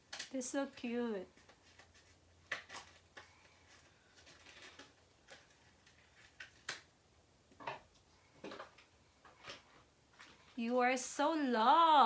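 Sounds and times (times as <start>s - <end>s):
packaging clicks and rustles: 1.3s - 6.9s.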